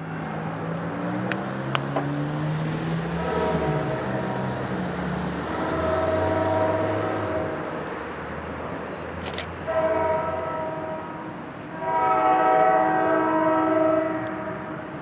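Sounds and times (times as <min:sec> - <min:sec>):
train air horn blasts: 0:03.1 - 0:07.6, 0:09.2 - 0:15.0.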